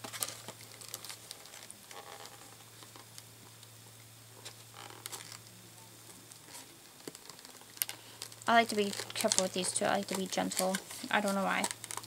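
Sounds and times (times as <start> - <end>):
packaging clicks and rustles: 0.0 - 3.3, 6.2 - 12.0.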